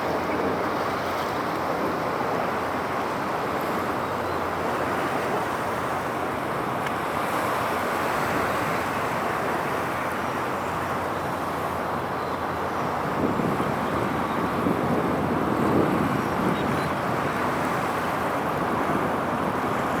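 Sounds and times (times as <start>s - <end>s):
wind on microphone: 12.9s - 20.0s.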